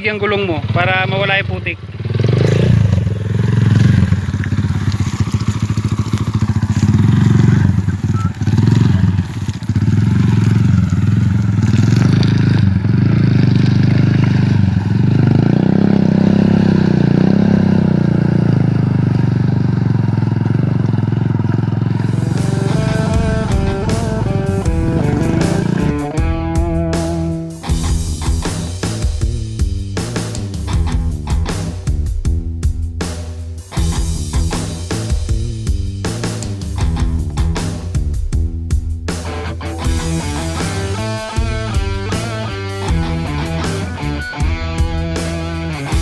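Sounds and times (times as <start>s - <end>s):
motorcycle engine under throttle: 0.0s - 26.3s.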